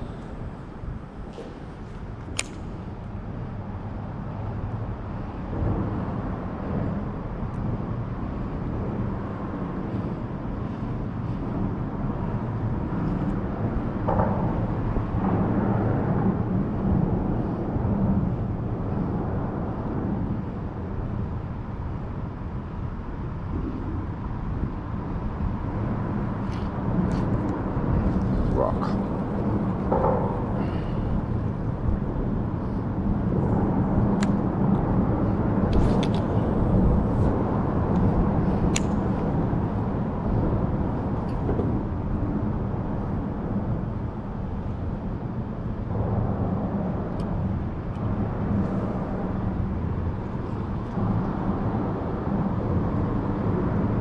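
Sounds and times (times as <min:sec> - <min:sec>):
low engine rumble: 0:24.5 - 0:53.2.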